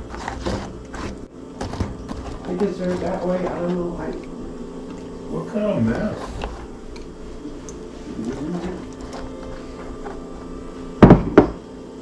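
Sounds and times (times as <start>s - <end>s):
low appliance hum: 0.0s - 12.0s
loud sharp knocks: 11.0s - 11.6s.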